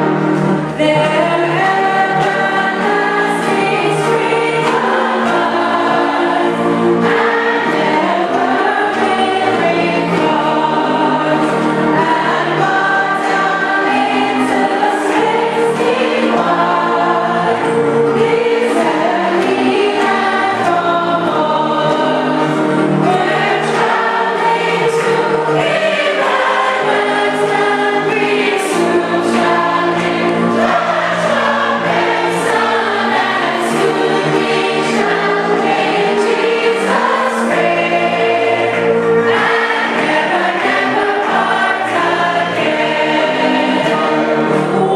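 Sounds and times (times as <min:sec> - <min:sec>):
congregation singing a hymn: 0:00.0 - 0:44.9
instrumental accompaniment: 0:00.0 - 0:44.9.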